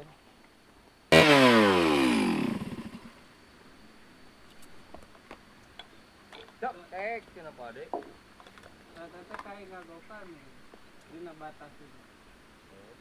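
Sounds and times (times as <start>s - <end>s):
small engine winding down: 1.1s - 3.2s.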